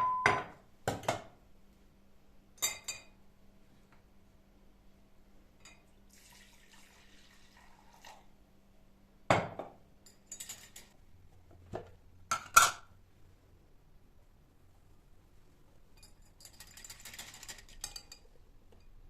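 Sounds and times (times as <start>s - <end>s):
dishes clinking and knocking: 0.0s - 1.3s, 9.3s - 10.9s, 11.8s - 12.9s.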